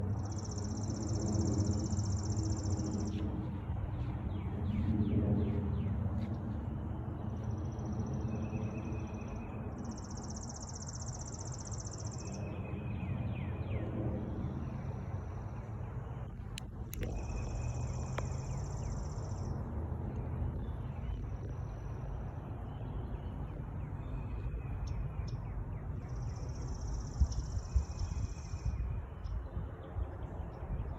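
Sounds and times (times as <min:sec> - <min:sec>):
low rumble: 0:00.0 - 0:08.7, 0:12.8 - 0:30.9
sharp clicks: 0:16.5 - 0:18.4.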